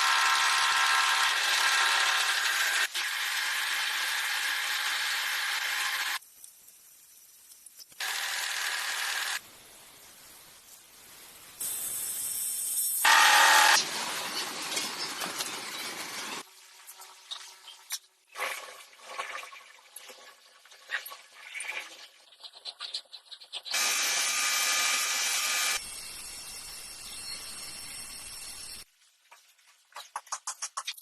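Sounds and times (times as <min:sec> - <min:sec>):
metalworking tools drilling: 0:00.0 - 0:06.2, 0:08.0 - 0:09.4, 0:13.1 - 0:16.4, 0:23.7 - 0:27.4.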